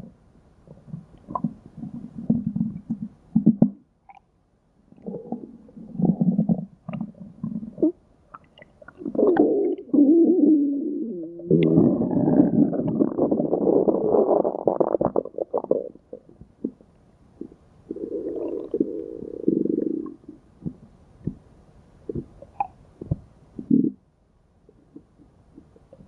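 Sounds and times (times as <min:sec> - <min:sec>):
cartoon stomach growling: 0:09.0 - 0:16.8.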